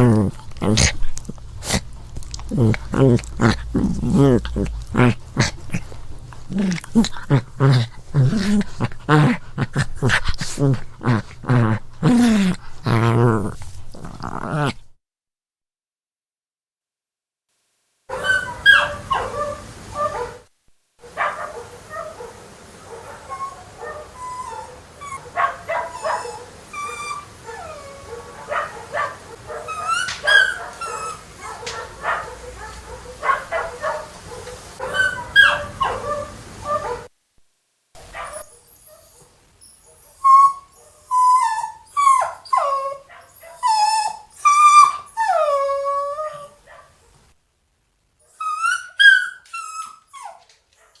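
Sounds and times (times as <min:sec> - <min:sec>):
dog yipping and whining: 0:18.1 - 0:20.4, 0:23.1 - 0:34.0, 0:34.8 - 0:37.1, 0:38.0 - 0:46.8, 0:48.3 - 0:51.0.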